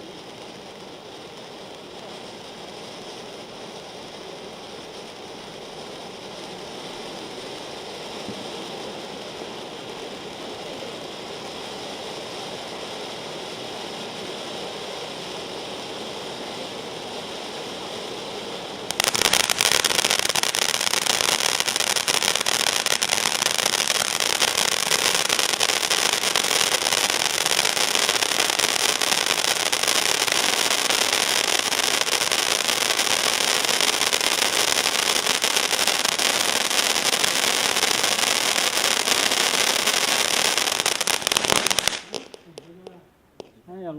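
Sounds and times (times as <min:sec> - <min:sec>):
firework fountain hissing: 0:00.0 - 0:43.9
fine crackling: 0:18.8 - 0:43.8.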